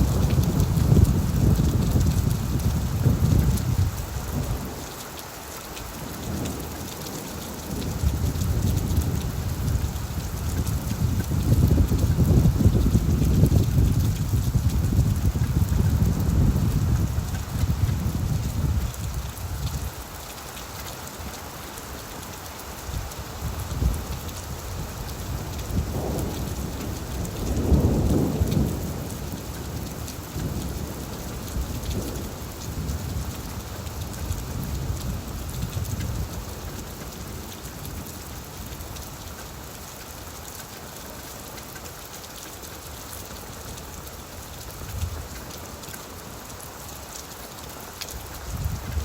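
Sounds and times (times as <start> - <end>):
low rolling thunder: 0.0 - 4.8, 6.0 - 19.9, 23.7 - 38.1
rain falling on leaves: 0.0 - 49.0.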